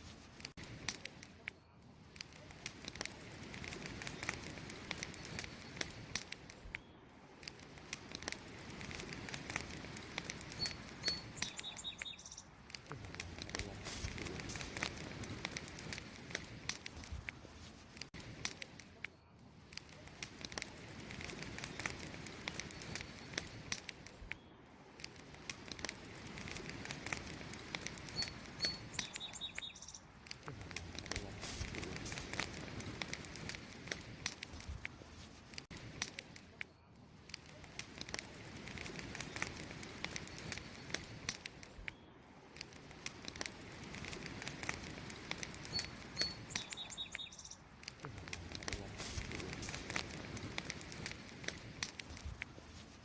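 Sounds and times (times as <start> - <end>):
campfire crackling and popping: 0.0 - 53.0
low rush of flames: 0.0 - 53.0
faint bird chirping: 10.4 - 12.6, 28.0 - 30.2, 45.6 - 47.7.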